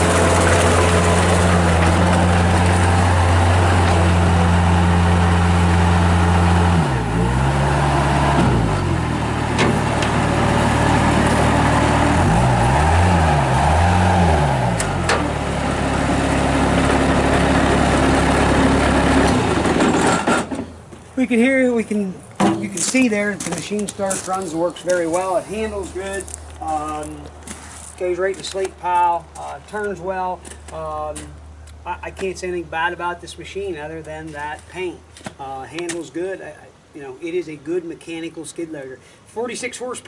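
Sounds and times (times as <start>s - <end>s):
diesel engine at high revs: 0.0s - 20.6s.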